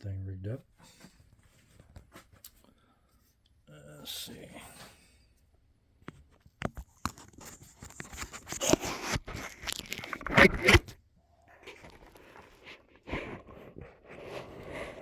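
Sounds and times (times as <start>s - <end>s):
scraping and crinkling: 6.1s - 15.0s.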